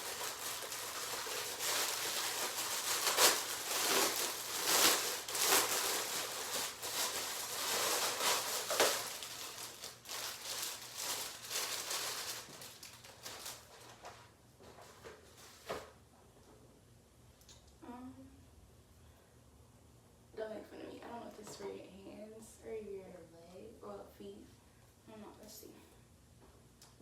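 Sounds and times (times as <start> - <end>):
parcel tearing open: 0.0 - 13.1
plastic packaging crinkling: 0.0 - 15.7.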